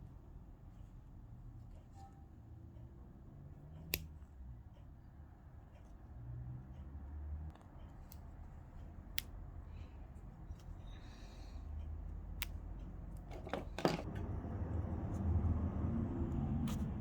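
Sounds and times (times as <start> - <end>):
scissors snipping stitches: 3.6 - 4.2, 7.6 - 9.4.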